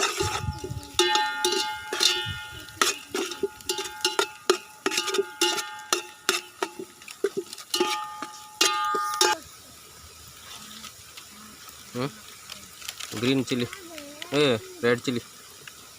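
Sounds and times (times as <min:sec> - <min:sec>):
metal spoon scraping a pan: 0:00.0 - 0:09.4.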